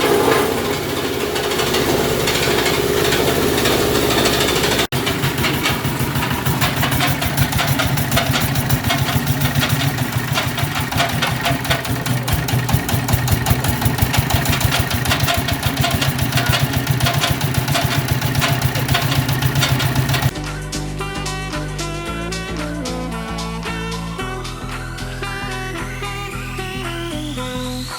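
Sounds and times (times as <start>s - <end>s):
crusher machine rattling: 0.0s - 20.3s.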